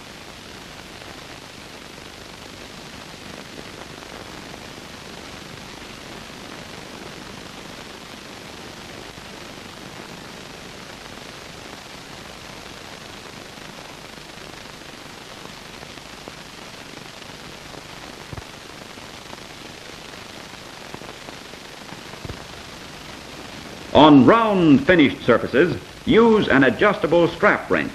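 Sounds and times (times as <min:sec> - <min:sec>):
recording noise hiss: 0:00.0 - 0:27.9.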